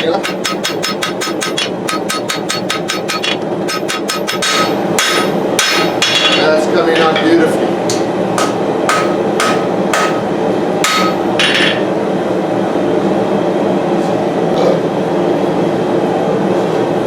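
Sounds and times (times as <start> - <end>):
hammer striking steel on anvil: 0.0 - 7.3, 7.9 - 11.9
gas forge burner: 0.0 - 12.5.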